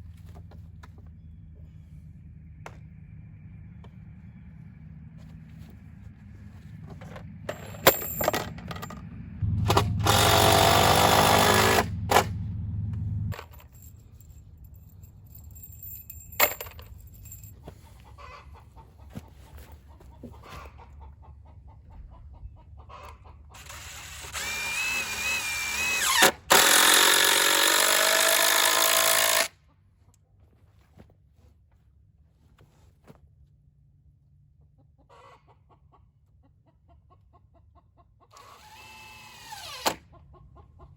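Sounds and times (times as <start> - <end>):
power tool whining: 6.8 - 13.6, 23.6 - 29.5, 38.4 - 40.0.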